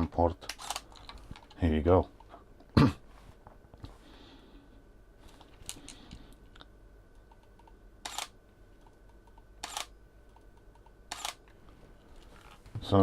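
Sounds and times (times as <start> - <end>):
camera shutter double click: 8.0 - 8.3, 9.6 - 9.9, 11.1 - 11.4.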